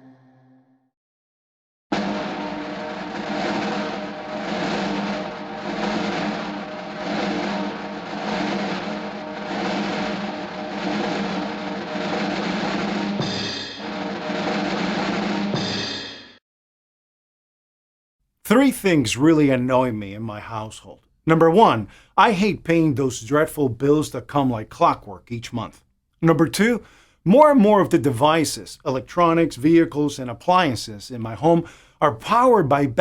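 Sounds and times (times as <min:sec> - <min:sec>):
music led by drum kit: 0:01.9 - 0:16.4.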